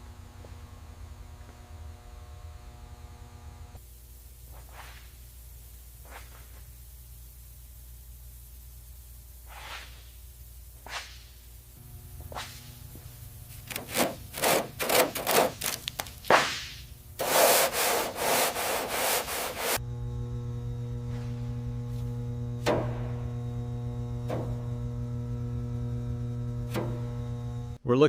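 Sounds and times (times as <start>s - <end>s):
steady low hum: 0.0s - 27.8s
quick scraping strokes: 9.4s - 10.1s, 13.6s - 19.8s.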